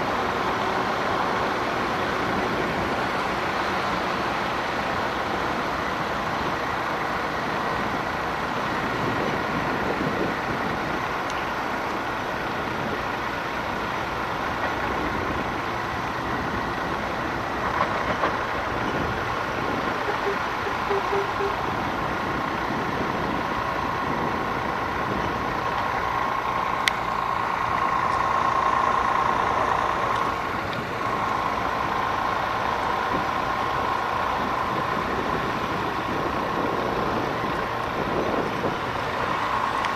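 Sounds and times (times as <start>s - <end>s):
heavy vehicle engine running: 0.0s - 39.9s
steady whine: 18.5s - 22.7s.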